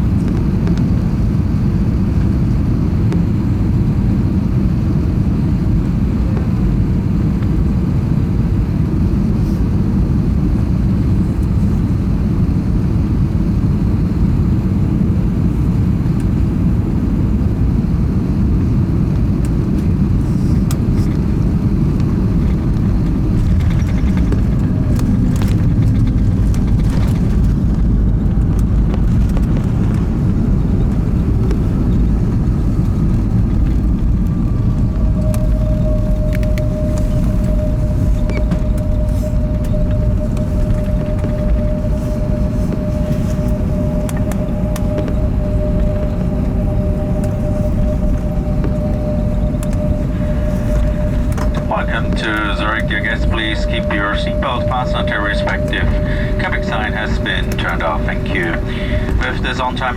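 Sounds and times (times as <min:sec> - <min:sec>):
airplane cabin low rumble: 0:00.0 - 0:59.9
faint clicks and rattles: 0:20.6 - 0:46.6.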